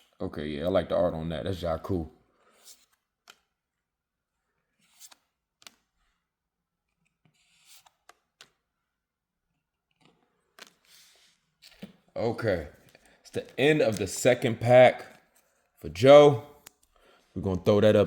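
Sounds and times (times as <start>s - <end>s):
trading cards clicking and rustling: 11.6s - 15.5s.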